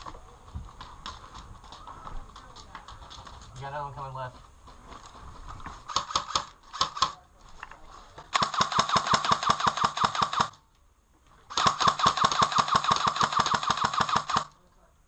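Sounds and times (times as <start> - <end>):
airsoft gun firing full-auto: 5.9 - 7.2, 8.3 - 10.6, 11.5 - 14.6.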